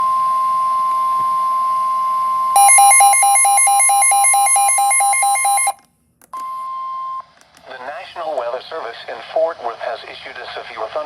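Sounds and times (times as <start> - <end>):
steady alarm tone: 2.6 - 5.8.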